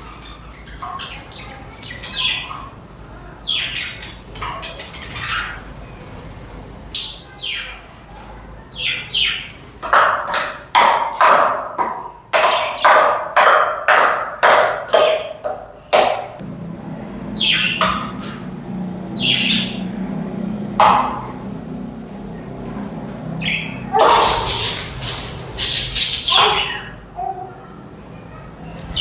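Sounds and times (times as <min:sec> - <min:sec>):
budgerigars chirping: 0:00.0 - 0:02.7, 0:17.4 - 0:18.5, 0:19.1 - 0:20.0, 0:23.4 - 0:27.0, 0:28.8 - 0:29.0
budgerigars squawking: 0:19.2 - 0:20.0, 0:23.4 - 0:27.0.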